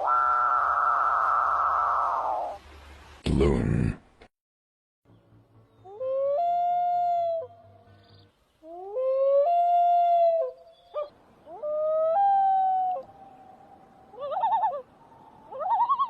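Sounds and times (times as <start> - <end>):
loon wail calls: 0.0 - 2.6, 8.9 - 13.4, 14.1 - 14.9.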